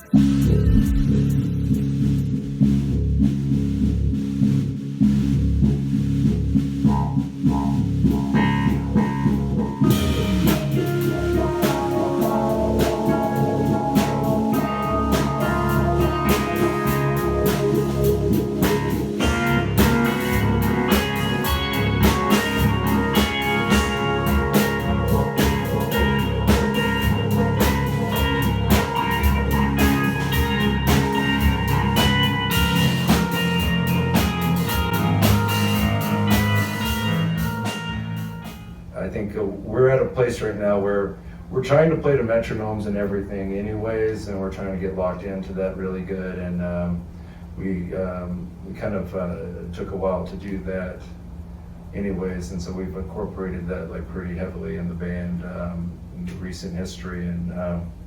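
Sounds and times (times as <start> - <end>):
drums and cymbals: 0.0 - 38.9
rock band playing: 8.2 - 38.9
guitar: 8.4 - 38.8.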